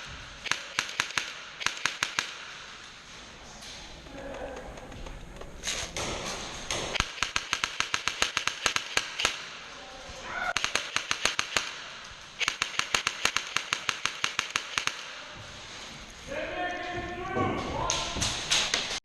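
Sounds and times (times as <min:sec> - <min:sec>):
airsoft rifle automatic bursts: 0:07.0 - 0:09.4, 0:10.6 - 0:15.1.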